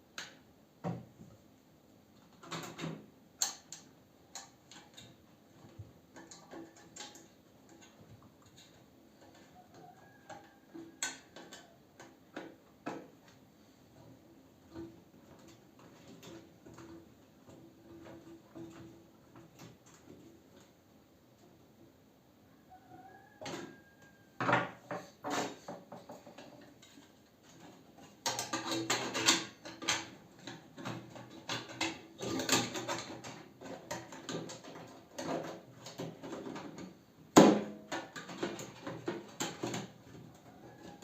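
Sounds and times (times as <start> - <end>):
metal and plastic rattles: 2.3 - 13.2, 14.0 - 20.6, 24.4 - 41.0
microwave parts clattering: 24.6 - 41.0.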